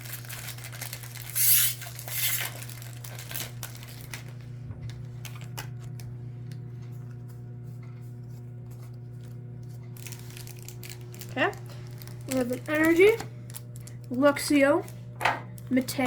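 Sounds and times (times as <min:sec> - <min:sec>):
foil wrapper tearing and crinkling: 0:00.0 - 0:04.4, 0:05.2 - 0:06.0, 0:10.0 - 0:14.9
steady low hum: 0:00.0 - 0:16.0.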